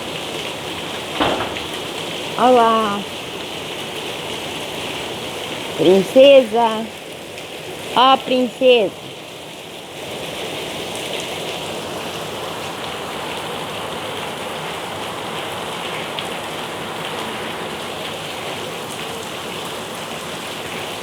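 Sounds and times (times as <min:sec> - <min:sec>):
steady rain hiss: 0:00.0 - 0:21.0
raindrop ticks: 0:00.2 - 0:03.1.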